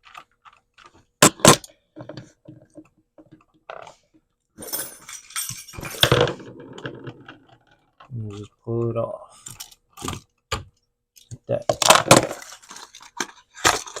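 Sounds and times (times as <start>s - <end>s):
metallic rattling and handling: 4.6s - 8.1s.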